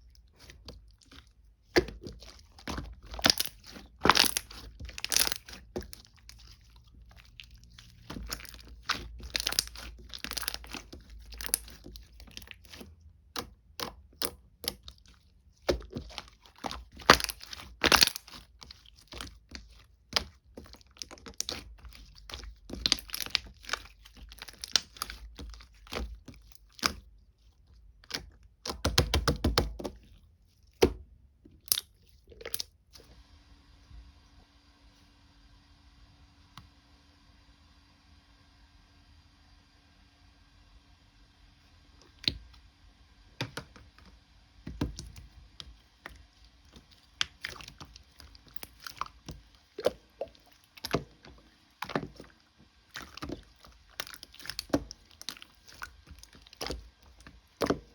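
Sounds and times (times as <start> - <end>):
slime crackling and popping: 1.8 - 6.4, 8.0 - 12.6, 16.6 - 18.6, 21.0 - 27.0, 46.7 - 51.0, 52.9 - 57.9.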